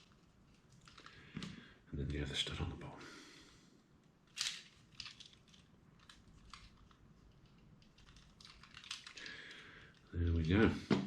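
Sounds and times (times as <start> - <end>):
plastic parts clicking: 0.0 - 1.6, 4.2 - 10.7.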